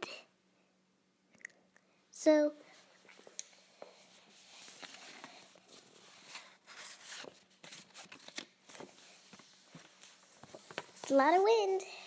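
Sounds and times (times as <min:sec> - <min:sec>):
small clicks and rustles: 0:04.5 - 0:11.4.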